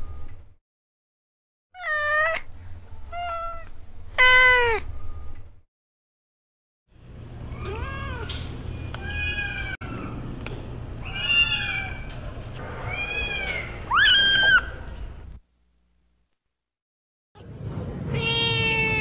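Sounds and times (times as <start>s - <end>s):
kitten meowing: 1.8s - 4.9s, 18.1s - 19.0s.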